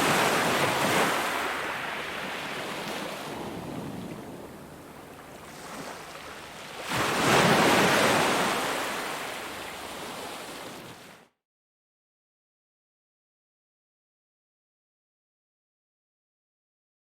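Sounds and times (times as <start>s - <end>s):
ocean waves breaking on shore: 0.0s - 11.3s.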